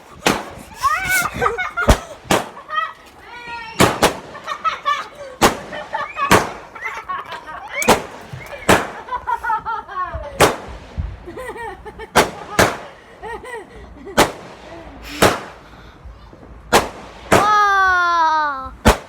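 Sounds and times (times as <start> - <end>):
fireworks exploding: 0.0 - 7.1, 7.7 - 9.6, 10.4 - 11.2, 11.9 - 13.0, 14.2 - 15.6, 16.3 - 17.7, 18.7 - 19.0.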